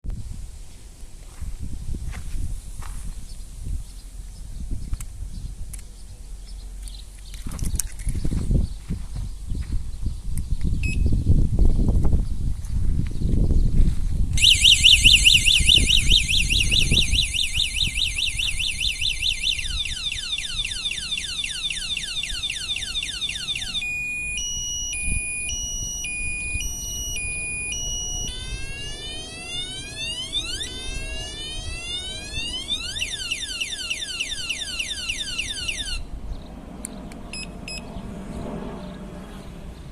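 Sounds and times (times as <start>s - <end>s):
short beeps: 10.8s - 11.1s, 14.4s - 20.6s, 23.0s - 36.0s, 37.4s - 37.9s
car alarm siren: 14.4s - 36.1s
low rumbling noise: 23.5s - 34.0s.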